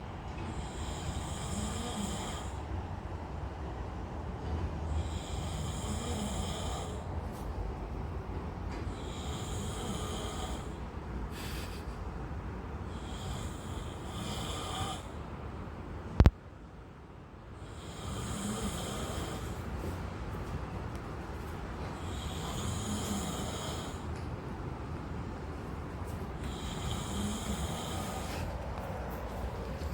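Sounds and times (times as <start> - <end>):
man snoring loudly: 0.6 - 2.6, 5.0 - 7.0, 9.0 - 10.8, 12.9 - 15.2, 17.7 - 19.6, 22.0 - 24.1, 26.4 - 28.6.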